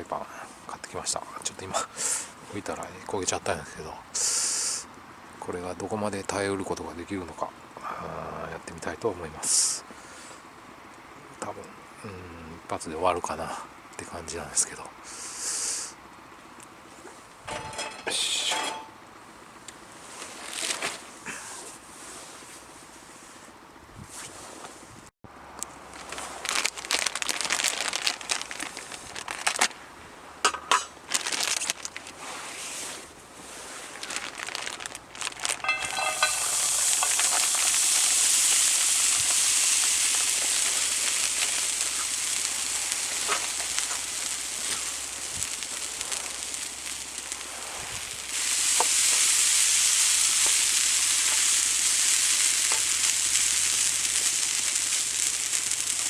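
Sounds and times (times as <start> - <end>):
curry sizzling in a frying pan: 34.6 - 56.0.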